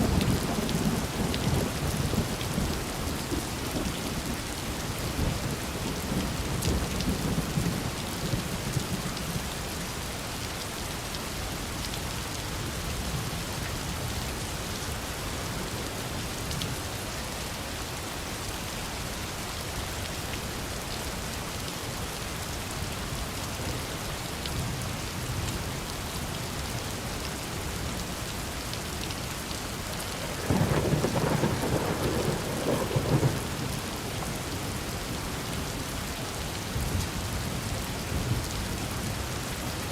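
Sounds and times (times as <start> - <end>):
heavy rain falling: 0.0 - 39.9
thunder rumbling: 30.2 - 35.6.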